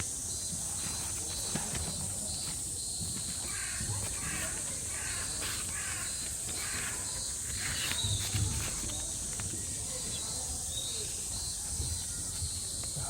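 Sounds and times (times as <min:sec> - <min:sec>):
crow cawing: 0:03.4 - 0:08.0.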